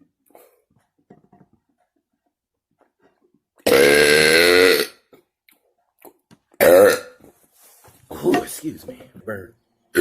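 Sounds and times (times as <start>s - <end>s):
long loud burp: 3.6s - 5.1s, 6.6s - 7.2s.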